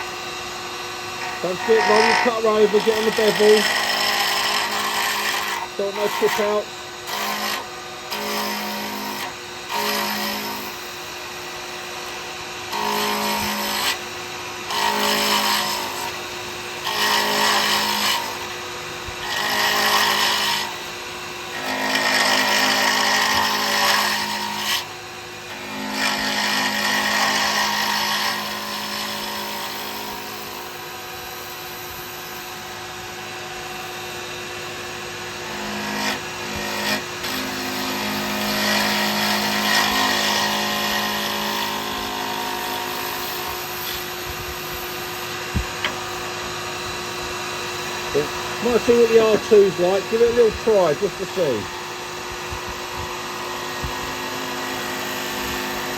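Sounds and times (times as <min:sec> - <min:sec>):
wood lathe humming: 0:00.0 - 0:55.9
cutter scraping hiss: 0:01.2 - 0:07.6.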